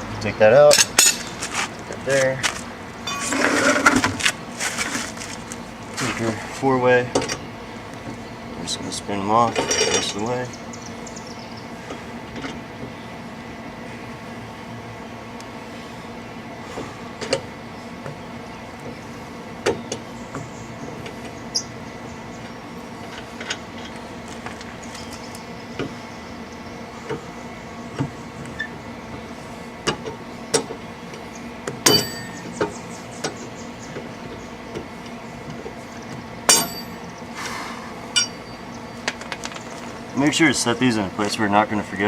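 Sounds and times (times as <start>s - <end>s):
steady hum: 0.0s - 42.0s
ringing metal clanks: 3.0s - 3.4s, 31.8s - 32.5s, 36.5s - 37.0s, 38.1s - 38.6s.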